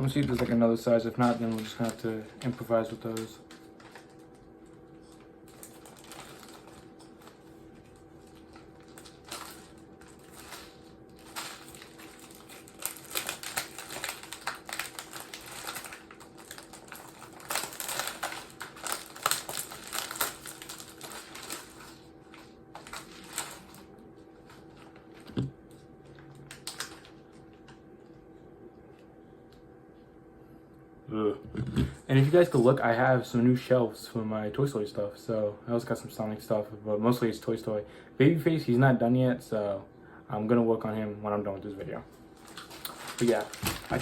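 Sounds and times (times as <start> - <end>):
faint steady hum: 0.0 - 44.0.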